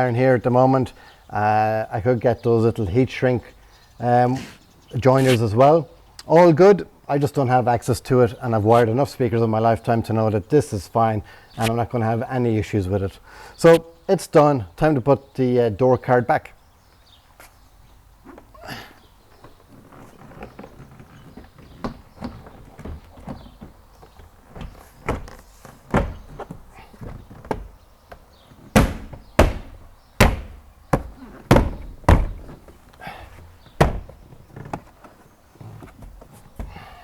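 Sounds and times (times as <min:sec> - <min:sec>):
plastic door trim knocks and thumps: 0:20.4 - 0:32.8, 0:33.7 - 0:34.9.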